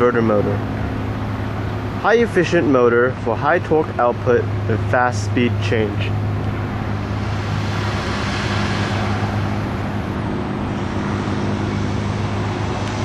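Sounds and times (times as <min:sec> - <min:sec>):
milling machine motor hum: 0:04.4 - 0:13.0
machine hiss: 0:06.7 - 0:13.0.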